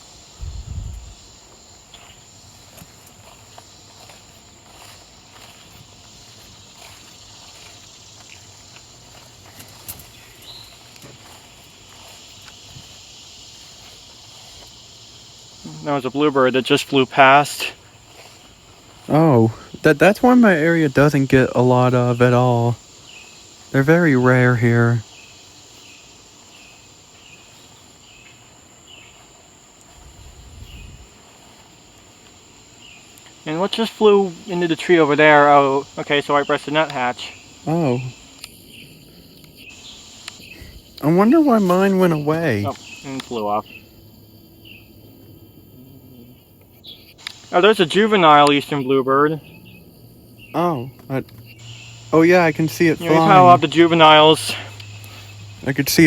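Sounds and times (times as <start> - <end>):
cicadas buzzing: 0.0 - 56.0
insects droning: 0.0 - 56.0
faint ticks: 38.3 - 41.1, 46.4 - 47.6, 50.9 - 51.8, 54.5 - 55.6.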